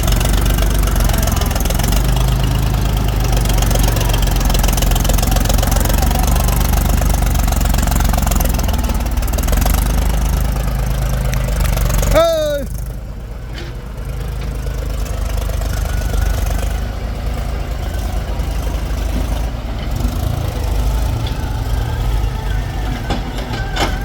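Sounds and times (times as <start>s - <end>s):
heavy diesel engine throbbing: 0.0s - 24.0s.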